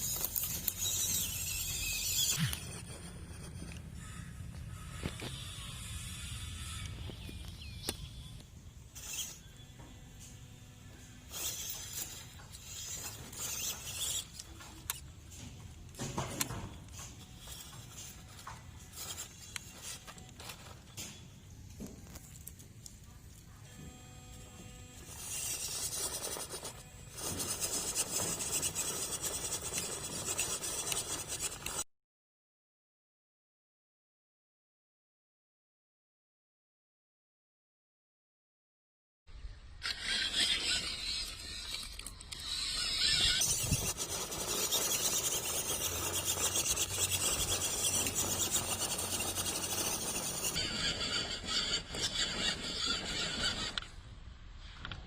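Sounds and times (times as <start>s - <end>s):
rc car driving over rough ground: 0.0s - 31.8s, 39.4s - 54.1s.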